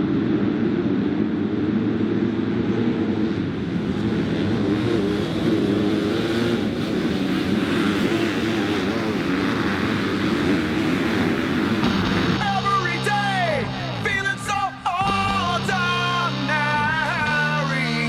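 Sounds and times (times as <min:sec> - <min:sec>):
racing engines revving: 0:00.0 - 0:18.0.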